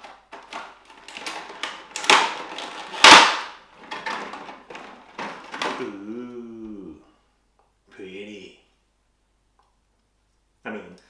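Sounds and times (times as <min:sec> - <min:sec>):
packaging rustling and scraping: 0:00.0 - 0:05.9.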